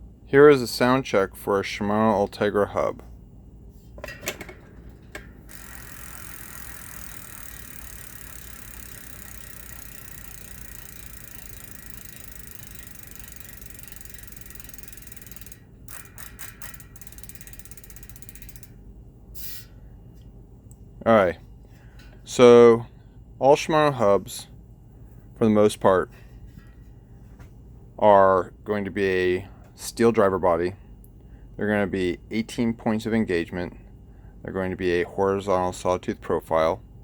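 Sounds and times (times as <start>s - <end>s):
bicycle hub ratchet clicking: 5.1s - 18.8s.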